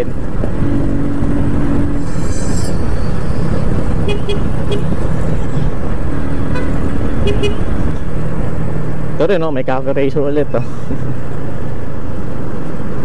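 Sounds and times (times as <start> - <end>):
motorcycle road noise: 0.0 - 13.0
steady horn-like tone: 1.8 - 5.0.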